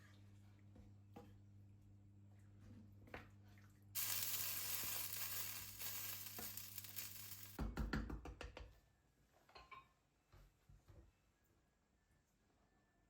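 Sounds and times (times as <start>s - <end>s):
kitchen tap running: 4.0s - 7.6s.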